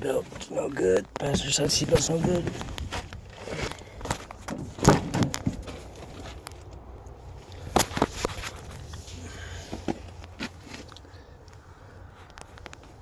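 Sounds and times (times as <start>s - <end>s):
knocks and clicks of handling: 1.2s - 6.8s.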